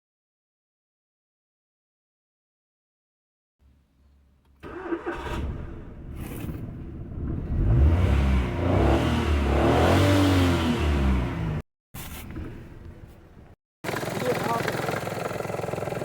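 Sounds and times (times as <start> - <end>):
car engine starting and revving: 4.6 - 11.6.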